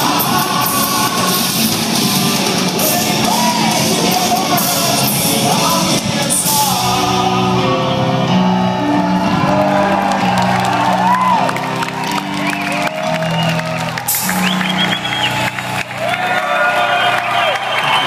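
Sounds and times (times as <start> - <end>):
people shouting and whooping: 0.0 - 2.2, 8.0 - 18.0
live rock band playing: 0.0 - 16.9.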